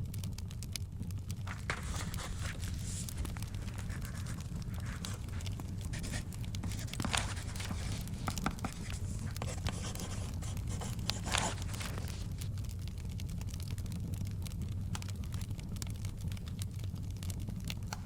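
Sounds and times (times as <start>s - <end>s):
small crackles: 0.0s - 18.0s
paper pages rustling: 1.3s - 12.6s.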